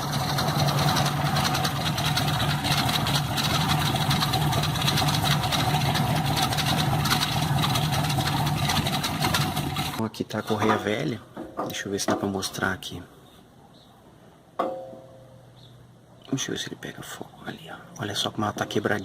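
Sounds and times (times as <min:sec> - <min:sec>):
alternator belt noise: 0:00.0 - 0:10.0
car engine idling: 0:00.0 - 0:10.0.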